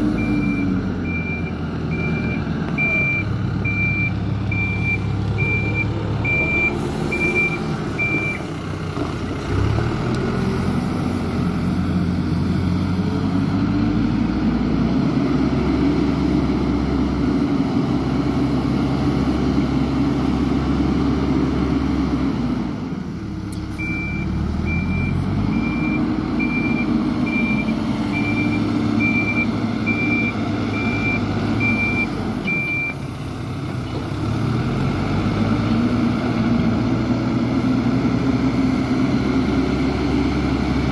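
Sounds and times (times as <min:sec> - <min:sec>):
heavy vehicle engine running: 0:00.0 - 0:40.9
backup alarm beeping: 0:00.2 - 0:08.5, 0:23.8 - 0:33.0.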